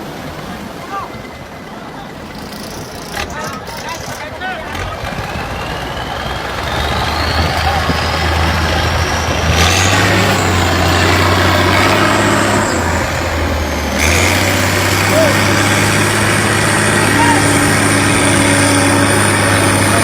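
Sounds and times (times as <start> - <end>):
engine running: 0.0 - 20.0
thin high whine: 2.2 - 4.3.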